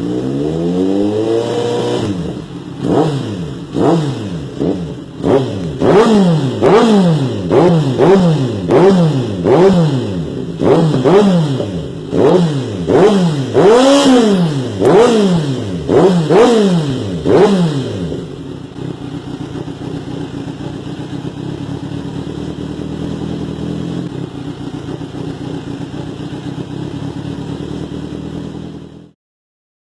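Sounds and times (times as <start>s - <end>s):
motorcycle engine idling: 0.0s - 29.2s
motorcycle throttle blips: 0.0s - 29.2s.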